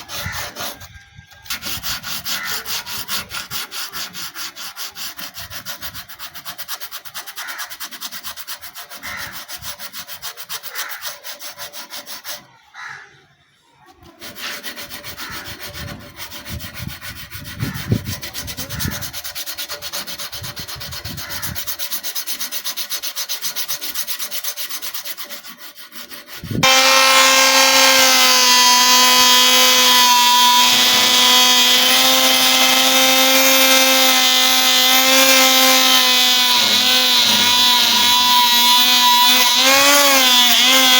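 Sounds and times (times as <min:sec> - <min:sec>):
electric power tool running: 0:26.6 - 0:40.9.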